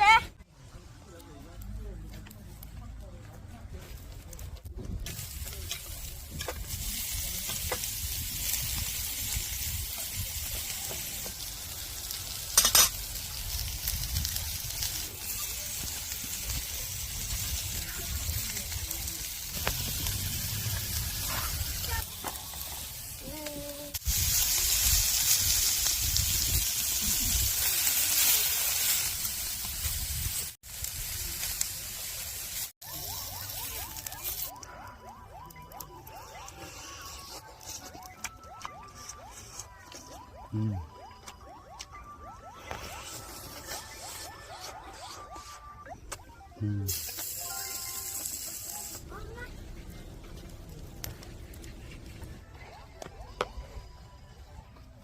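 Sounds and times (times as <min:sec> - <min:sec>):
steak sizzling on a grill: 0:05.0 - 0:34.6, 0:46.9 - 0:49.8.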